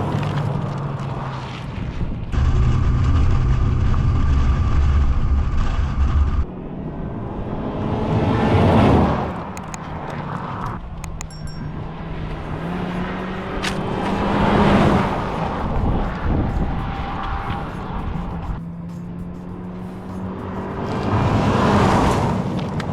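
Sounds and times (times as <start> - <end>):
car engine passing by: 0.0 - 10.8, 11.7 - 22.9
tyre noise: 8.9 - 22.9.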